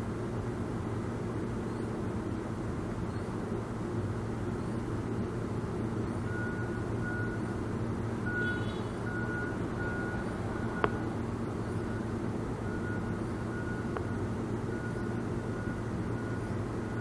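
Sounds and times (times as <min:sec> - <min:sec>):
machinery humming: 0:02.7 - 0:17.0
high backup alarm beeps: 0:06.2 - 0:17.0.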